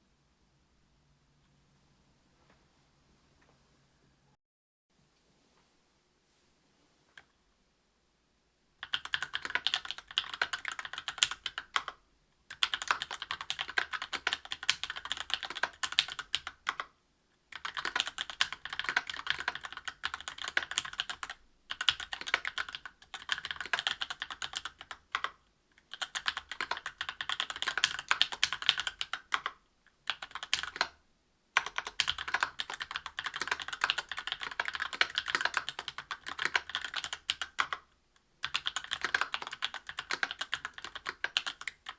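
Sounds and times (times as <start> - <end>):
fast mechanical keyboard typing: 8.8 - 16.9, 17.5 - 31.0, 31.6 - 37.8, 38.4 - 41.9.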